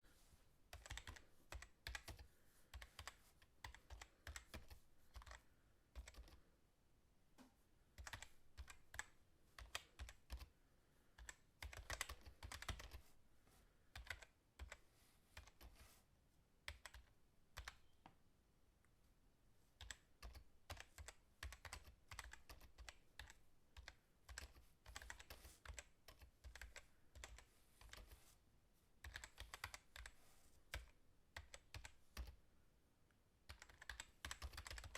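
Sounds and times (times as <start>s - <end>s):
fast typing on keyboard: 0.7s - 5.4s, 6.0s - 6.4s, 8.0s - 10.5s, 11.2s - 13.0s, 14.0s - 14.8s, 19.8s - 28.2s, 29.0s - 32.4s, 33.5s - 34.9s.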